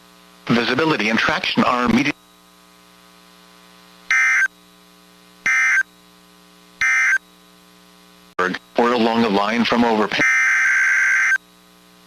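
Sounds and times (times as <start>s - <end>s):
faint electrical hum: 0.0s - 12.0s
digital data tone bursts: 4.1s - 4.5s, 5.4s - 5.9s, 6.8s - 7.2s, 10.1s - 11.4s.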